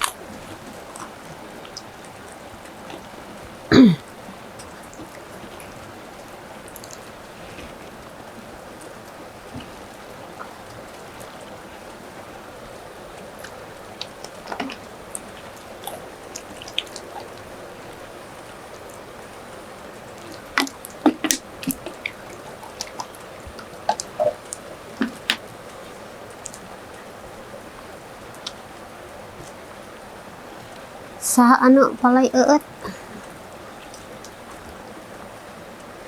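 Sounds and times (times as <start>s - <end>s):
steady rain: 0.0s - 36.0s
drips clicks and taps: 20.2s - 25.5s.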